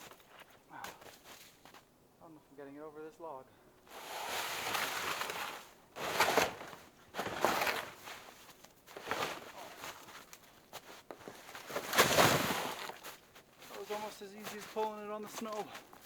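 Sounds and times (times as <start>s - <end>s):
sled scraping through snow: 3.9s - 6.6s, 11.4s - 15.8s.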